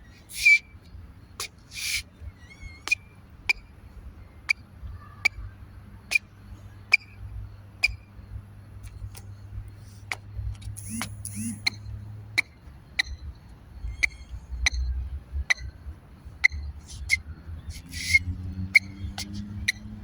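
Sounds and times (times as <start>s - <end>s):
sneakers squeaking: 10.8s - 11.8s, 16.4s - 20.0s.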